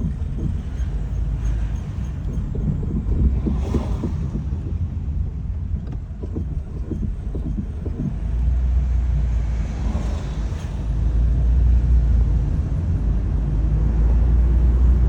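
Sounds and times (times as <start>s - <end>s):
rapid engine knocking: 0.0s - 9.4s
road and tyre rumble: 0.0s - 15.0s.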